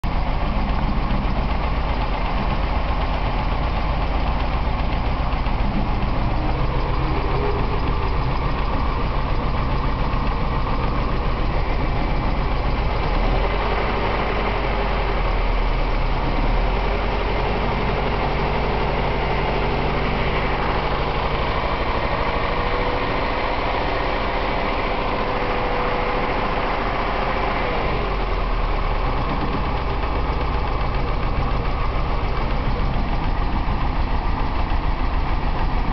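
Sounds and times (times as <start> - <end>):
engine idling with misfire: 0.0 - 35.9.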